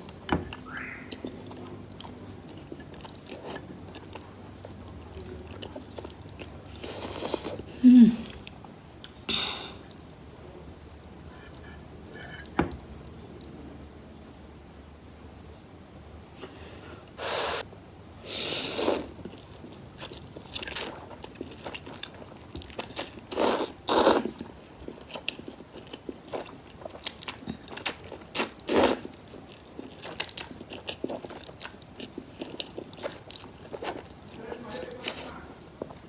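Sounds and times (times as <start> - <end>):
chewing noodles with wet clicks: 1.1 - 6.9, 19.0 - 34.4.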